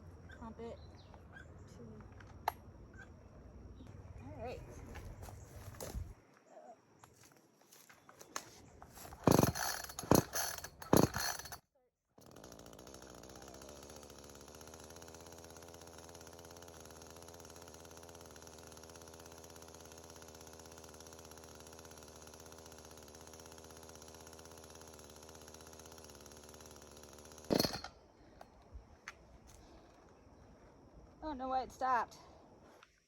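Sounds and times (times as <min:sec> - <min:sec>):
chainsaw engine idling: 0:08.9 - 0:11.6, 0:12.2 - 0:28.0.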